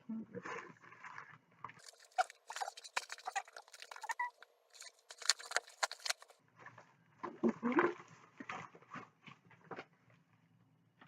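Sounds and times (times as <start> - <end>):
package crinkling and rustling: 1.8 - 6.4.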